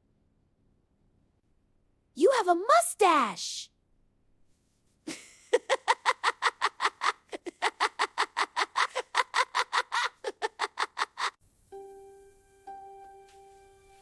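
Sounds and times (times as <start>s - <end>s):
high-pitched laughing: 5.1s - 11.4s.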